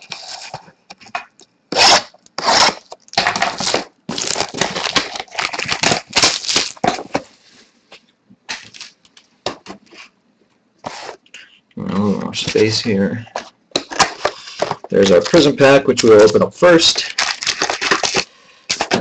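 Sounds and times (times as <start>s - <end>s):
plastic wrapping tearing: 1.7s - 7.1s, 8.5s - 9.1s, 13.8s - 19.0s
plastic rustling: 1.8s - 7.6s, 8.5s - 10.1s, 12.0s - 19.0s.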